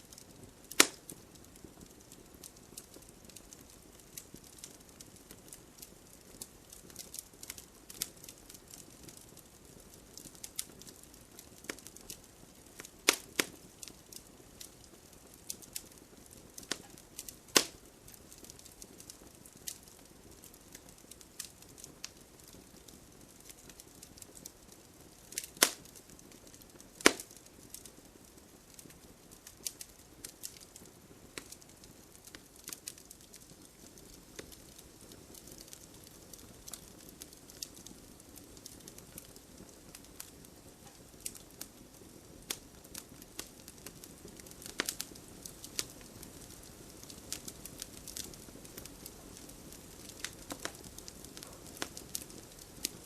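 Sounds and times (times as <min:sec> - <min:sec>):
fire crackling and popping: 0:00.0 - 0:53.0
wood fire hissing: 0:00.0 - 0:53.0.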